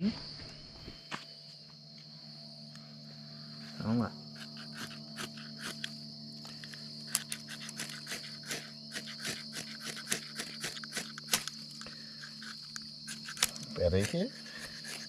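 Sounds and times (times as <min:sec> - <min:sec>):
crickets chirping: 0:00.0 - 0:15.0
handling clicks and snaps: 0:05.6 - 0:08.2, 0:09.2 - 0:15.0.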